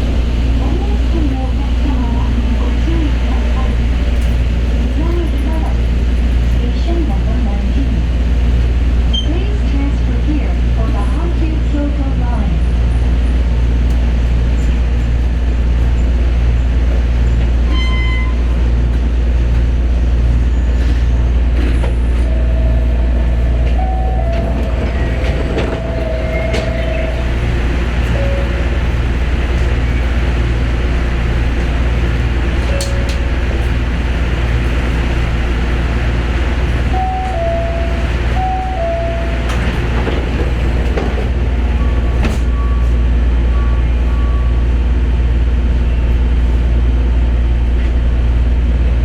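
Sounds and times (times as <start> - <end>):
train low rumble: 0.0 - 49.0.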